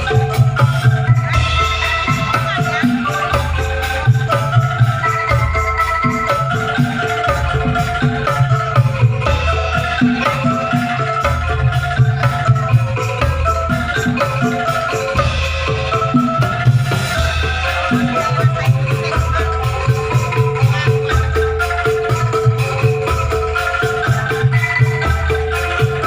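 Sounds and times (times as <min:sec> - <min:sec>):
bamboo melody over bass beat: 0:00.0 - 0:26.0.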